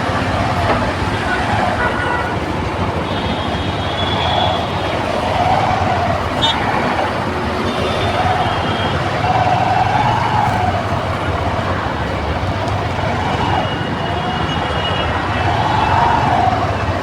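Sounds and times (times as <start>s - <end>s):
road traffic noise: 0.0s - 17.0s
siren wailing: 3.8s - 17.0s.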